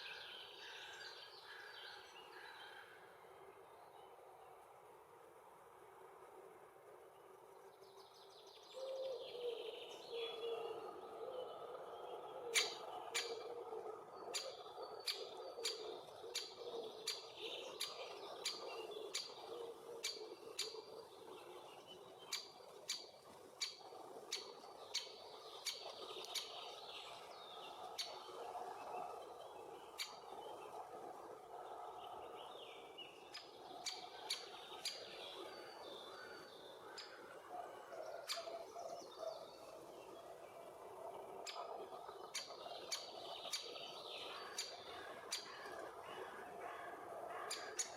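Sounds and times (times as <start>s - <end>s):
woodpecker calls: 12.4s - 13.5s, 14.2s - 21.0s, 22.3s - 26.8s, 33.2s - 35.2s, 38.0s - 39.4s, 41.5s - 47.9s.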